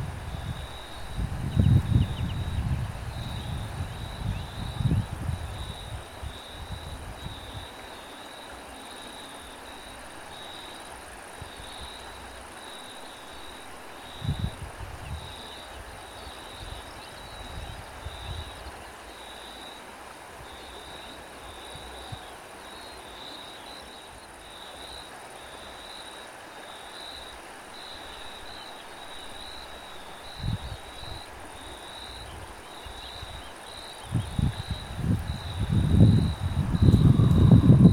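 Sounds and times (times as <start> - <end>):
wind buffeting microphone: 0.0 - 7.7, 14.2 - 18.8, 30.2 - 31.5, 32.1 - 37.9
background hiss: 0.0 - 37.9
cricket chirping: 0.2 - 37.9.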